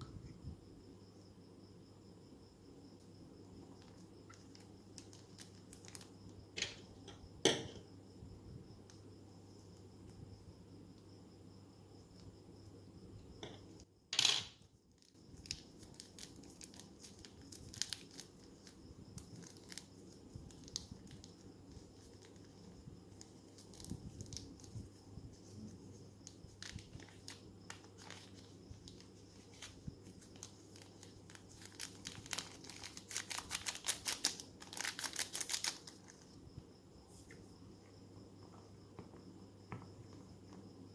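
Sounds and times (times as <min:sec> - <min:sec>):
plastic bag crinkling: 0:04.3 - 0:06.1, 0:26.5 - 0:36.2.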